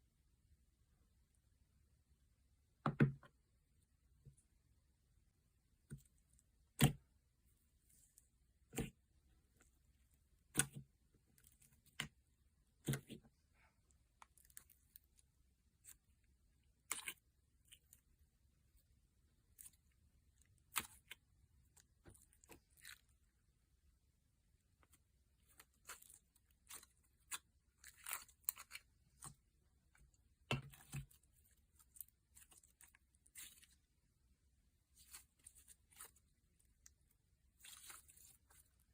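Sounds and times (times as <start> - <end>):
slime squelch: 5.8 - 23.6, 24.5 - 38.9
slime crackling and tearing: 25.5 - 29.3.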